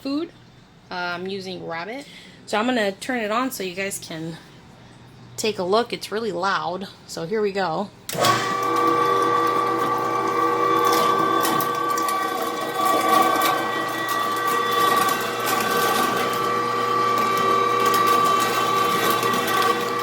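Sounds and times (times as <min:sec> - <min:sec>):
electric meat grinder whining: 0:08.2 - 0:20.0.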